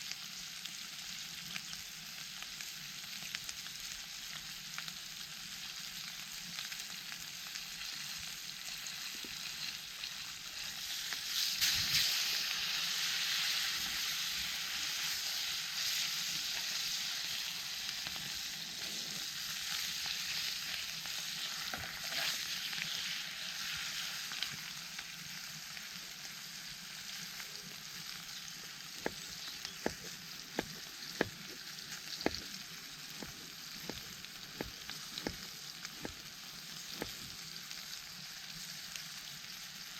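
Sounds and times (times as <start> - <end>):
food sizzling in a pan: 0.0 - 39.9
fire popping and crackling: 27.9 - 37.7.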